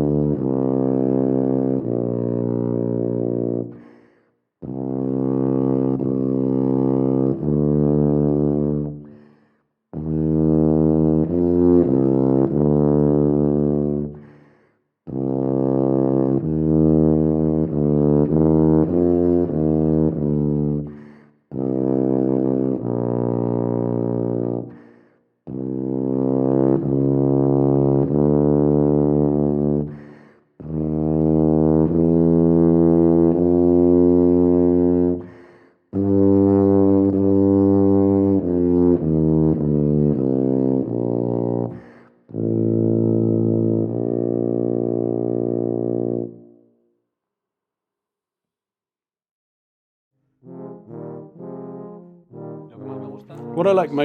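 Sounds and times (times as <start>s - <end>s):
tuba playing: 0.0s - 3.9s, 4.6s - 9.1s, 10.0s - 14.3s, 15.1s - 24.9s, 25.5s - 46.8s, 50.2s - 54.0s
player breathing: 3.7s - 4.5s, 9.0s - 9.7s, 14.2s - 14.9s, 20.9s - 21.4s, 24.7s - 25.3s, 29.9s - 30.5s, 35.2s - 35.9s, 41.7s - 42.3s.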